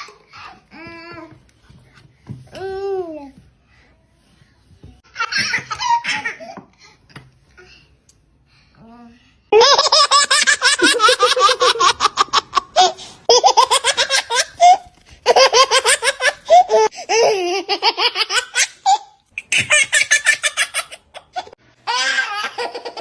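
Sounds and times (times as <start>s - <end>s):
baby laughing: 9.6s - 23.0s.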